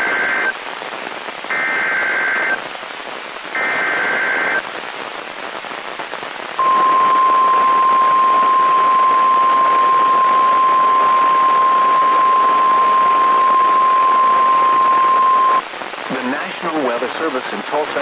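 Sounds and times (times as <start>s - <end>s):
radio hiss: 0.0s - 18.0s
buzzing two-tone data warble: 6.6s - 15.6s
single-pitched alarm tone: 6.6s - 15.6s.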